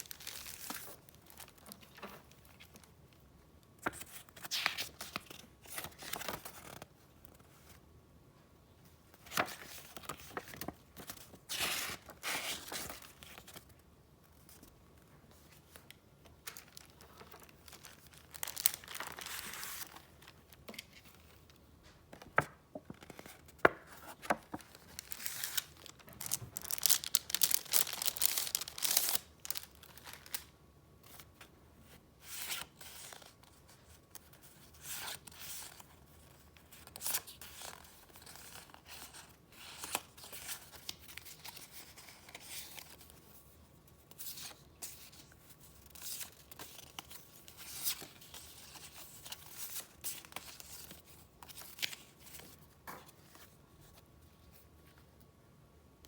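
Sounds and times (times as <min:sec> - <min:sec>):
paper rustling and crinkling: 0:09.1 - 0:13.8, 0:14.4 - 0:31.5.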